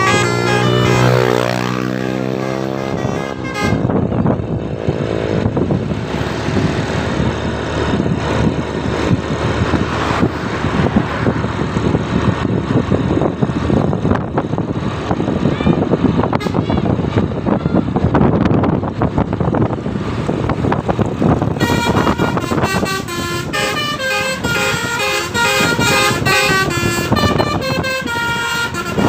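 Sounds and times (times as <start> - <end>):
bus horn melody: 0.0 - 4.5, 16.3 - 16.9, 21.4 - 29.0
vehicle and road noise: 0.0 - 29.0.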